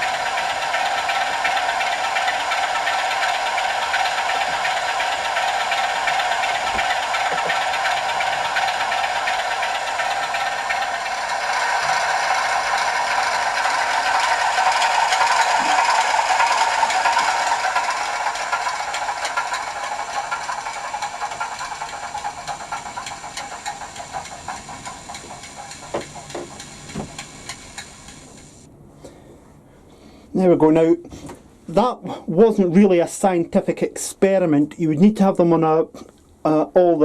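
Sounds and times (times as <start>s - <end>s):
diesel engine through small speaker: 0.0s - 28.7s.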